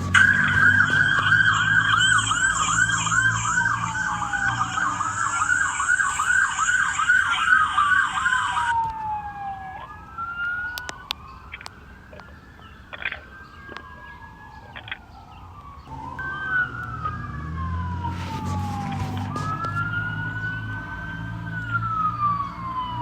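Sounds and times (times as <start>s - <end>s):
police siren wail: 0.0s - 23.0s
police siren yelp: 0.0s - 23.0s
sharp clicks: 10.7s - 12.3s, 12.9s - 13.9s, 14.7s - 15.7s.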